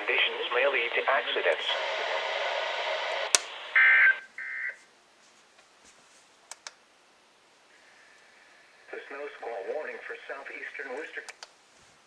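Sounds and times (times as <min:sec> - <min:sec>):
radio static hiss: 0:00.0 - 0:04.9, 0:07.7 - 0:11.4
faint clicks: 0:06.5 - 0:06.8, 0:11.0 - 0:11.6.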